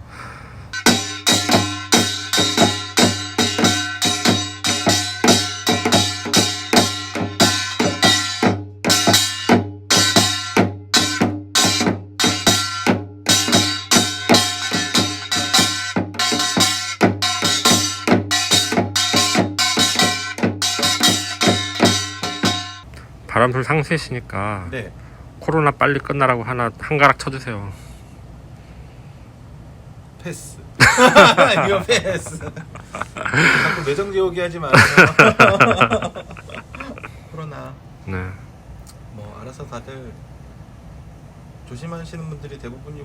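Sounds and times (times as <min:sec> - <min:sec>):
fast drum beat: 0:00.8 - 0:22.8.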